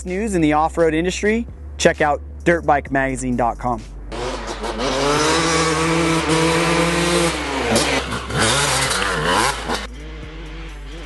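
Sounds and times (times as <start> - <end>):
dirt bike engine revving: 4.1 - 11.0.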